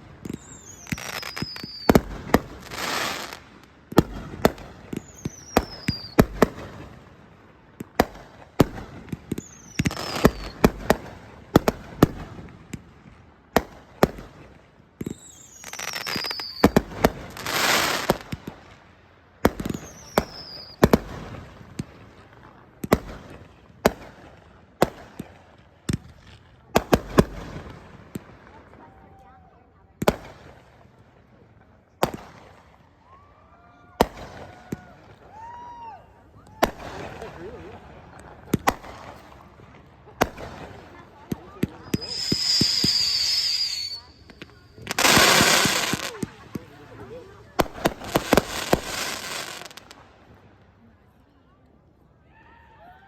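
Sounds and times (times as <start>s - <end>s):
fireworks bangs: 0.0s - 18.7s, 19.4s - 29.2s, 32.0s - 33.2s, 33.9s - 35.7s, 36.6s - 50.1s
firework whistle falling: 41.8s - 46.1s
firework hissing: 41.8s - 46.4s.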